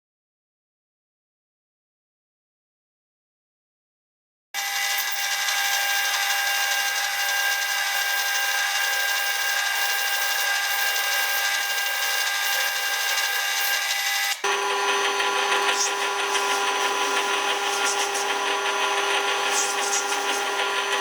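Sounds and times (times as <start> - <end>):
small power tool whining: 4.6 - 21.0.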